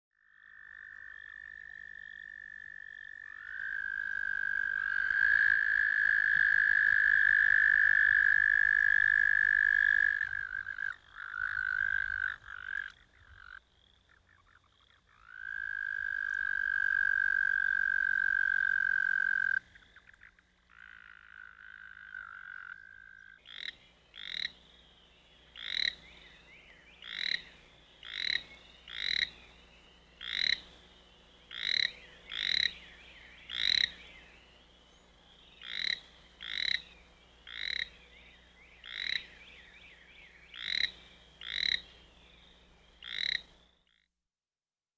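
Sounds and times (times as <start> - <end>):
toads trilling: 0.2 - 24.8, 25.6 - 29.5, 30.2 - 30.8, 31.5 - 32.9, 33.5 - 34.2, 35.6 - 42.4, 43.0 - 44.0
short sharp toad calls: 43.0 - 44.0.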